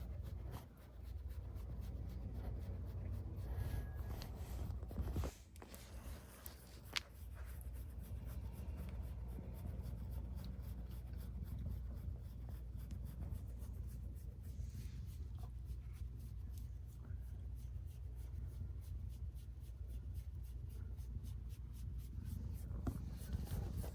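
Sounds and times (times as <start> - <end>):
hand rubbing on fur: 0.0 - 23.9.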